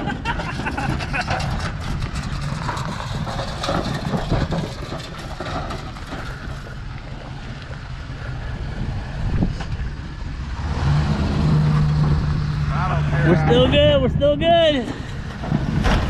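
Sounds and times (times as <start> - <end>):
vehicle engine running slowly: 0.0 - 15.8
wind noise on microphone: 8.4 - 12.6.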